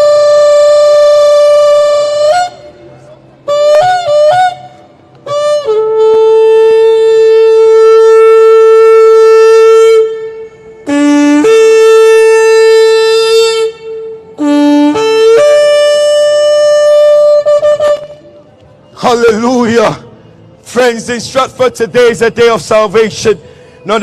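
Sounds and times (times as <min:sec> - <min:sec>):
shofar blasts: 0:00.0 - 0:18.4.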